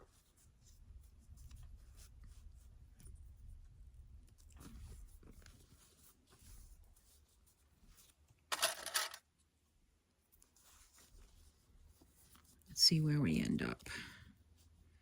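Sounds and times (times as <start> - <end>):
rustling clatter: 7.9 - 9.2.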